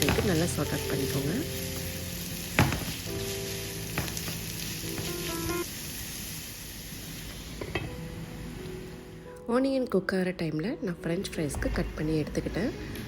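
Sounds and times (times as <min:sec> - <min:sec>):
background music: 0:00.0 - 0:05.7, 0:07.6 - 0:13.0
onion sizzling in hot oil: 0:00.0 - 0:09.1.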